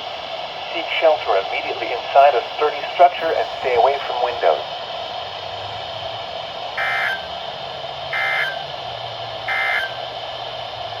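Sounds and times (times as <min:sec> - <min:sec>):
radio hiss: 0:00.0 - 0:11.0
digital data tone bursts: 0:06.8 - 0:07.4, 0:08.1 - 0:08.7, 0:09.5 - 0:10.0.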